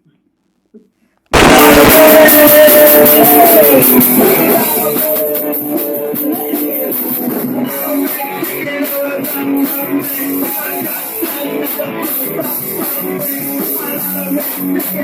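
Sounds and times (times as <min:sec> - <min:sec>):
drums: 0:00.0 - 0:15.0
electric guitar: 0:01.3 - 0:15.0
rock band playing: 0:01.4 - 0:15.0.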